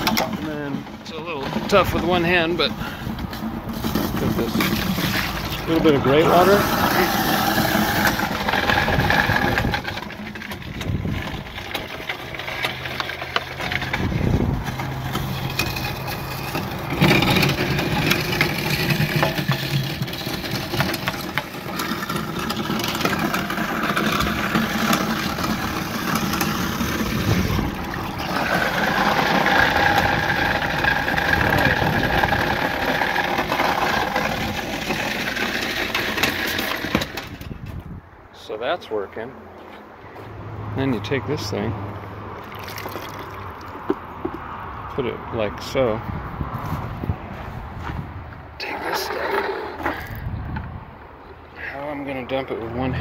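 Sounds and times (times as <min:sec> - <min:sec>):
garbage disposal grinding: 0:00.0 - 0:37.6, 0:42.4 - 0:44.0.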